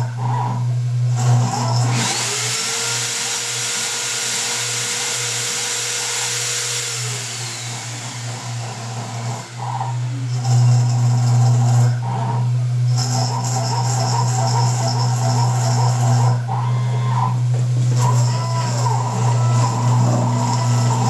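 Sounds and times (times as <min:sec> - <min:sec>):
milling machine spindle whining: 0:00.0 - 0:21.0.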